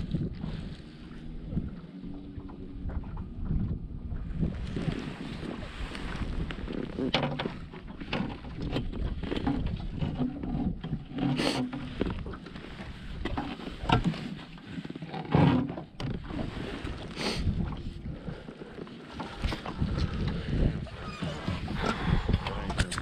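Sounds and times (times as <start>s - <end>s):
wind buffeting microphone: 0.0s - 14.8s, 15.9s - 18.5s, 19.2s - 23.0s
water slapping against boat: 0.0s - 23.0s.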